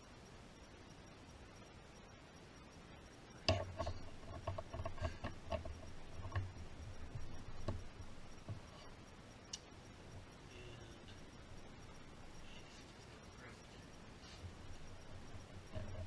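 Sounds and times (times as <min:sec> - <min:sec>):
hard objects knocking and clattering: 0:03.5 - 0:08.7.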